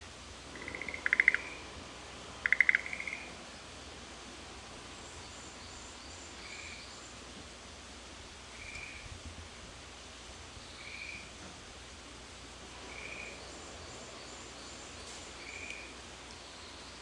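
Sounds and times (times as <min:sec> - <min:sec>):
frogs croaking: 0:00.5 - 0:01.7, 0:02.4 - 0:03.7, 0:05.2 - 0:07.1, 0:08.5 - 0:09.0, 0:10.6 - 0:11.3, 0:12.8 - 0:14.8, 0:15.4 - 0:17.0.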